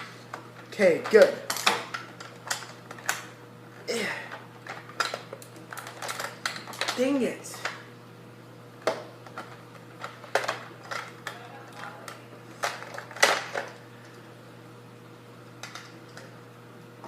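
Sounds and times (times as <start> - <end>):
faint steady hum: 0.0 - 17.0
plastic parts clicking and clattering: 1.0 - 3.2, 4.6 - 7.1, 8.8 - 11.9, 12.6 - 13.8.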